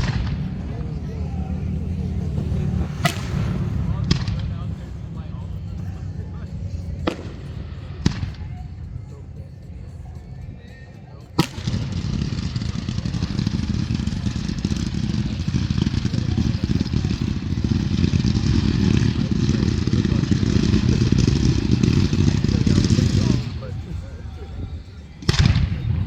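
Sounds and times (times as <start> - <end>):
firework bang: 0.0 - 1.1, 1.8 - 5.6
fireworks crackling: 0.0 - 9.2, 11.4 - 26.0
low rumble: 0.0 - 10.8.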